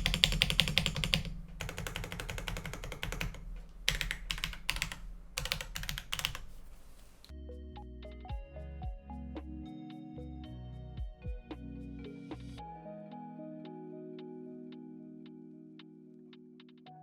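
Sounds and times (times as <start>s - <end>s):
fast typing on mechanical keyboard: 0.0s - 7.0s
gentle plucked background music: 7.3s - 17.0s.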